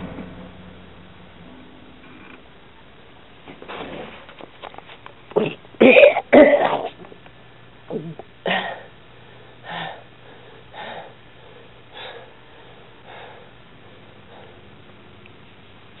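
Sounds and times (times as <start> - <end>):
person clearing throat: 5.4 - 7.0
person coughing: 5.4 - 7.0.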